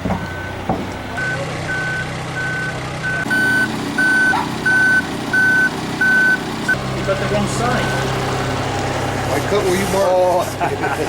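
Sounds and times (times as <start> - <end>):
sharp knocks: 0.0 - 1.0
vehicle backup alarm beeping: 0.0 - 8.3
diesel engine running: 0.0 - 11.0.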